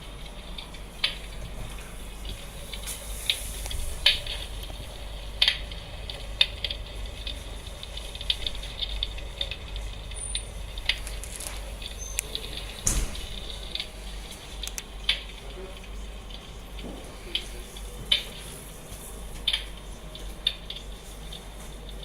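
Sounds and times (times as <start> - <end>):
logs crackling and popping: 0.3 - 15.6
steady hiss: 1.0 - 15.0.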